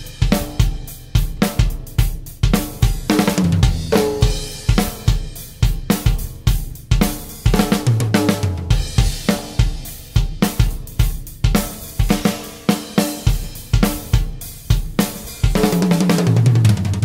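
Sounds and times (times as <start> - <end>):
low pitched drum ringing: 0.0 - 7.0
drum kit groove: 0.0 - 17.0.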